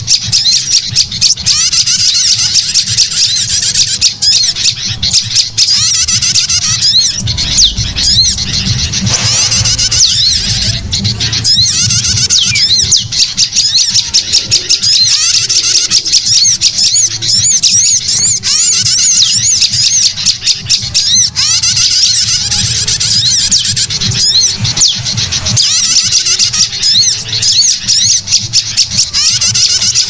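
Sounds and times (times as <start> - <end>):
small songbirds chirping: 0.0 - 30.0.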